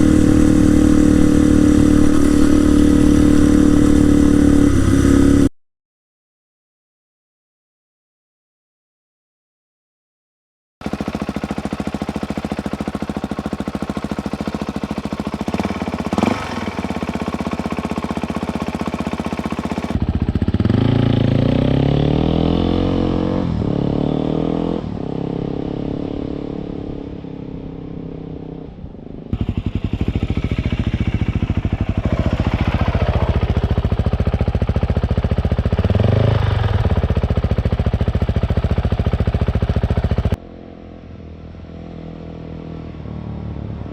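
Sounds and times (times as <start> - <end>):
dirt bike engine revving: 0.0 - 5.5, 10.8 - 28.6, 29.3 - 40.4.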